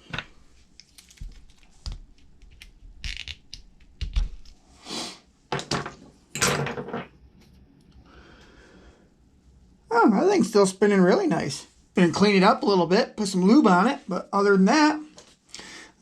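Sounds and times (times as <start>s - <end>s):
small parts clicking and knocking: 0.0s - 4.6s.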